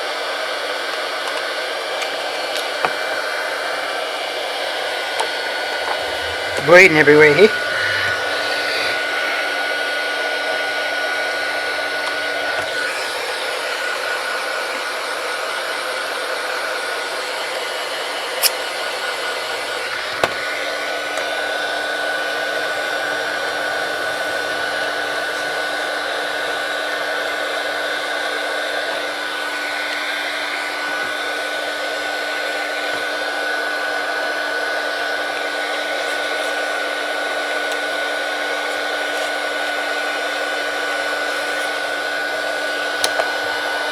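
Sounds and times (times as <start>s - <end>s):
heat gun blowing hot air: 1.3s - 43.9s.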